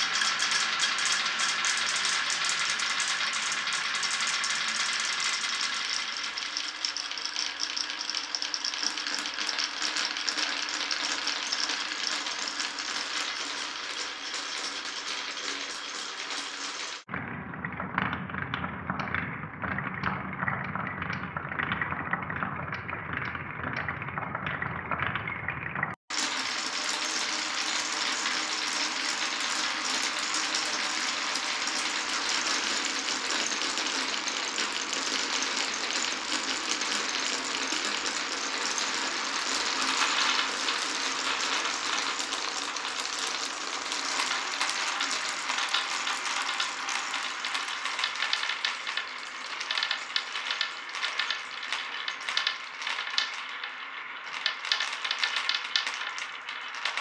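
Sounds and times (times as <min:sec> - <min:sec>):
marbles rolling on wooden run: 0:00.0 - 0:17.1, 0:17.8 - 0:57.0.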